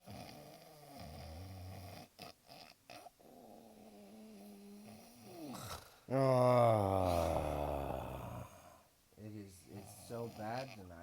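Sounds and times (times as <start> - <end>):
person snoring: 3.2 - 8.9, 9.7 - 11.0.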